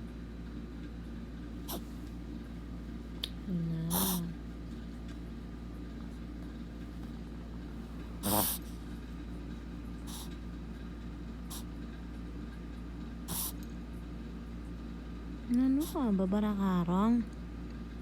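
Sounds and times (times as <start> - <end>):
dog snorting: 1.7 - 1.9, 3.9 - 4.3, 8.2 - 8.8, 10.1 - 10.4, 13.3 - 13.6.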